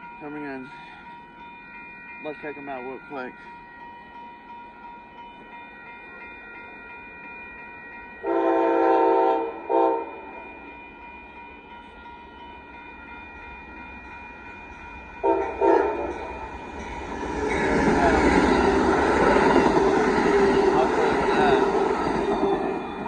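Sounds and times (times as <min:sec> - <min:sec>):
locomotive horn blasts: 0:08.2 - 0:10.3, 0:15.2 - 0:16.3.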